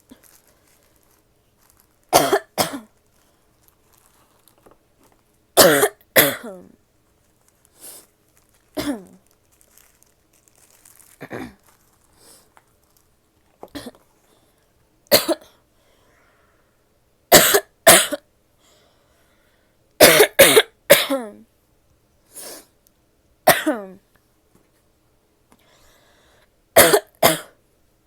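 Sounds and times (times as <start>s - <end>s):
woman coughing: 2.1s - 2.9s, 5.6s - 6.7s, 8.8s - 9.2s, 11.2s - 11.6s, 13.7s - 14.0s, 15.1s - 15.5s, 17.3s - 18.2s, 20.0s - 21.4s, 23.5s - 24.0s, 26.8s - 27.6s.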